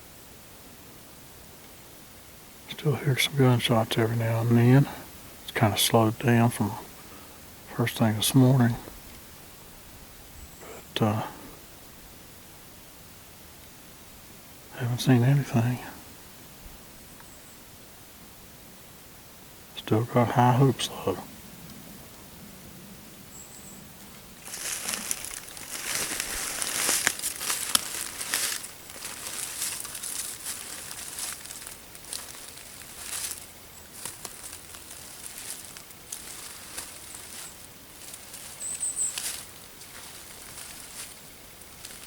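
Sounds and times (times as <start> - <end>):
rustling: 24.0 - 42.0
small bird chirps: 30.0 - 40.9.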